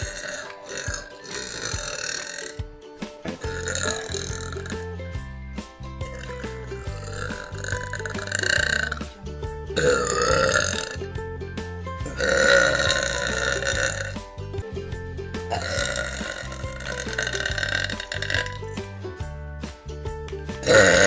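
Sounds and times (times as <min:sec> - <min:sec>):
person burping: 0:00.0 - 0:02.6, 0:03.3 - 0:05.0, 0:06.1 - 0:09.1, 0:09.8 - 0:11.0, 0:12.0 - 0:14.2, 0:15.4 - 0:18.8, 0:20.6 - 0:21.0
background music: 0:00.0 - 0:21.0.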